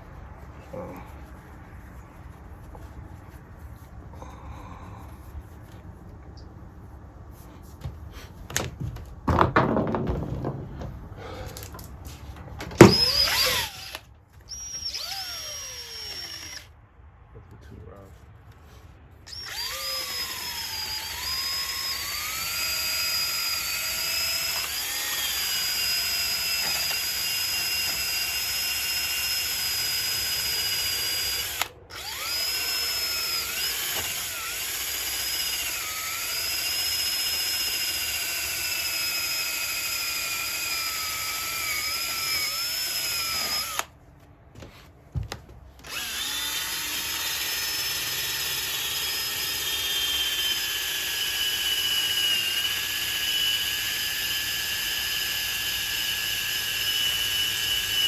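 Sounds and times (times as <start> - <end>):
rotary power tool whining: 12.7 - 16.7, 19.3 - 43.9, 45.8 - 58.0.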